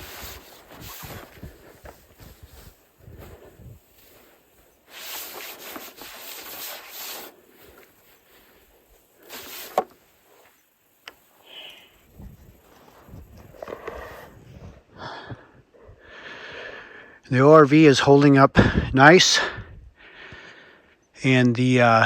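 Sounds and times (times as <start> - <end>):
snow brushed off dish: 0.0 - 14.4.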